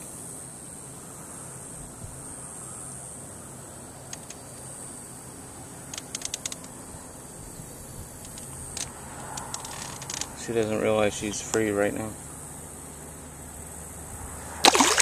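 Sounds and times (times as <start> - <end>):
high insect drone: 0.0 - 15.0
sharp clicks: 4.1 - 4.4, 5.9 - 6.7.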